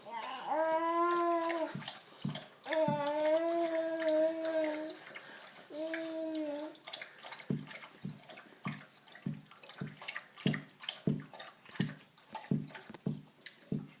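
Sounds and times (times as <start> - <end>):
wet mouth smacking while eating: 6.8 - 14.0.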